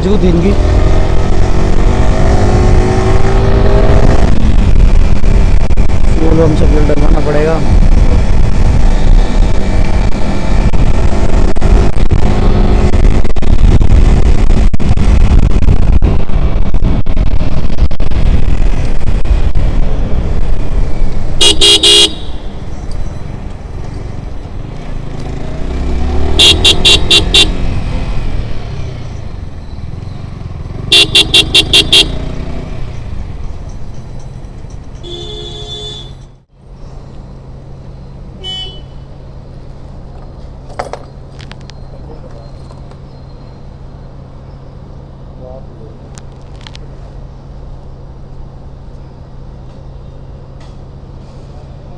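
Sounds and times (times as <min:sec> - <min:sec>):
wind noise: 0:00.0 - 0:35.2
motorcycle engine riding: 0:00.0 - 0:51.9
horn tooting: 0:21.4 - 0:22.6, 0:26.2 - 0:27.9, 0:30.8 - 0:32.4, 0:35.0 - 0:36.3, 0:38.4 - 0:39.1.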